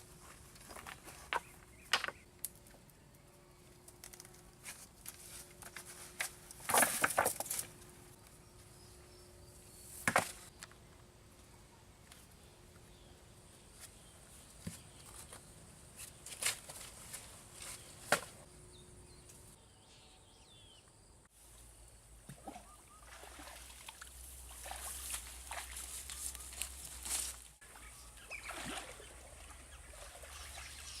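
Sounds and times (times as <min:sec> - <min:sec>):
pond water trickling and sloshing: 0:21.3 - 0:31.0
water splashing: 0:22.3 - 0:25.9, 0:27.6 - 0:31.0.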